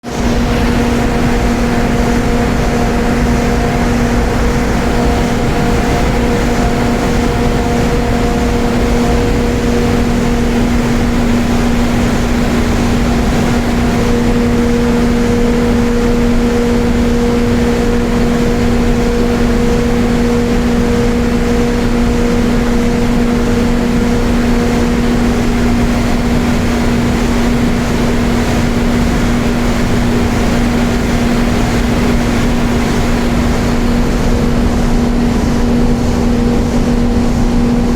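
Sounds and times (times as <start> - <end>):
engine-room machinery noise: 0.0 - 37.9
higher machine tones: 0.0 - 37.9
low hum: 0.0 - 37.9.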